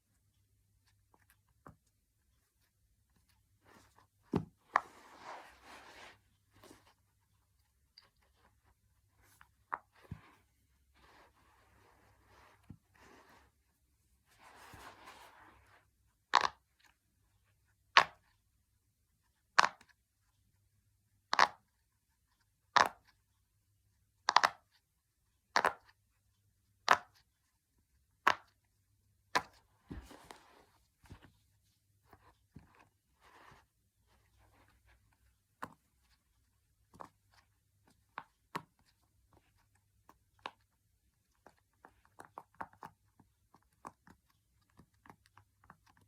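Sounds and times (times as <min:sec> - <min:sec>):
soft handling rustle: 0:00.9 - 0:16.0, 0:29.5 - 0:40.2.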